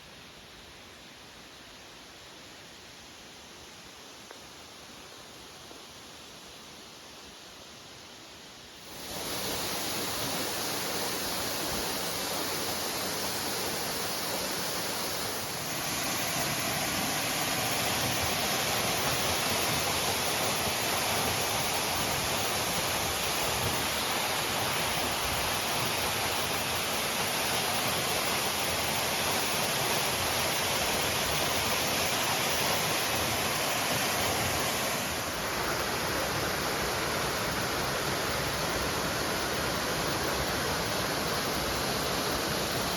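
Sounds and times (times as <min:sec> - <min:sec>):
waterfall rushing: 0:08.8 - 0:42.9.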